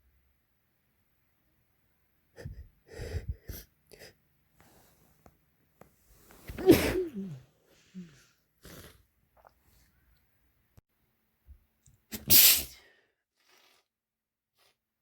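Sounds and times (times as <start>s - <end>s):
sniffs and snorts: 6.3s - 9.9s, 13.4s - 13.9s
loud wet sneeze: 6.4s - 7.5s, 12.1s - 13.8s.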